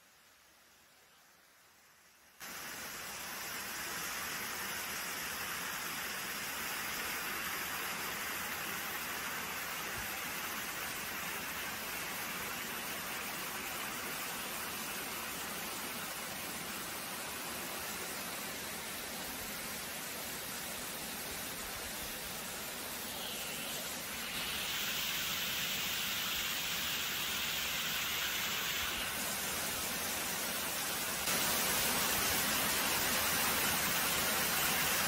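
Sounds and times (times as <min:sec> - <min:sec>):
waterfall rushing: 0:07.1 - 0:35.0.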